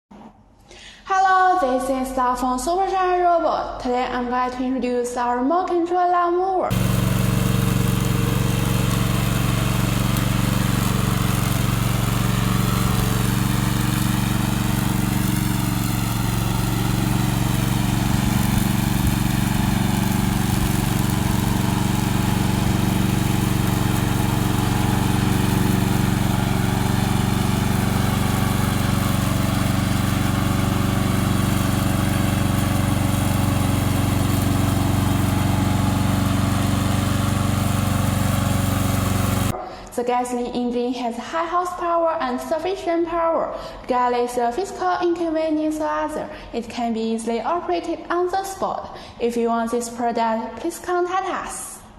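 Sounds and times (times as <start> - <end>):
mower engine running: 6.7 - 39.6.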